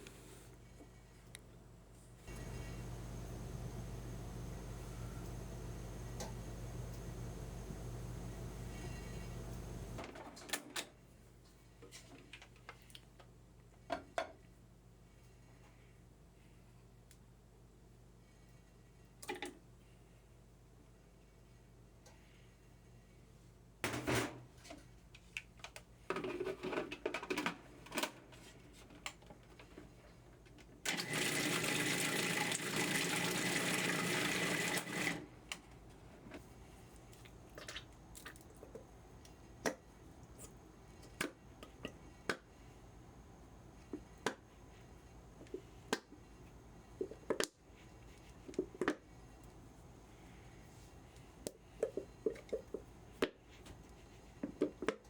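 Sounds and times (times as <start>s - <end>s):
electric blender running: 30.9s - 35.3s.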